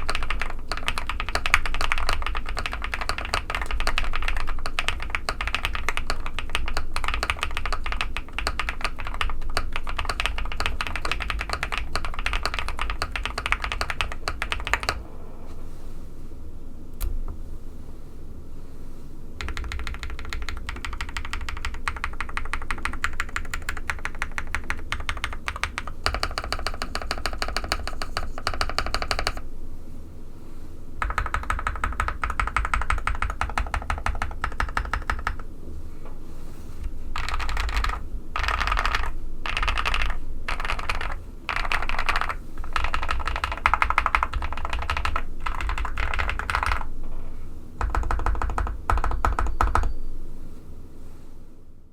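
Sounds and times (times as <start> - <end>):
mechanical keyboard typing: 0.0 - 15.0, 19.4 - 29.4, 31.0 - 35.4, 37.2 - 46.9, 47.8 - 49.9.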